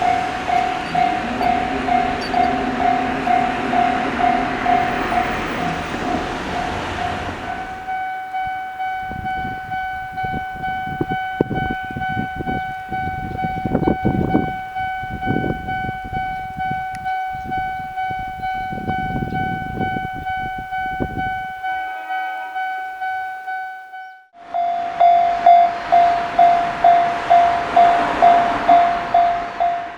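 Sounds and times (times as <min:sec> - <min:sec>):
loud rushing noise: 0:00.0 - 0:08.0, 0:24.8 - 0:29.9
train rumbling and clattering: 0:00.0 - 0:21.8, 0:24.8 - 0:29.9
level-crossing warning bell: 0:00.0 - 0:29.9.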